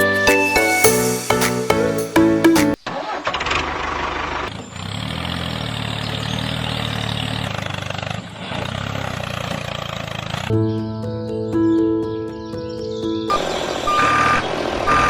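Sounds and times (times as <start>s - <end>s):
engine chugging: 3.6s - 10.5s.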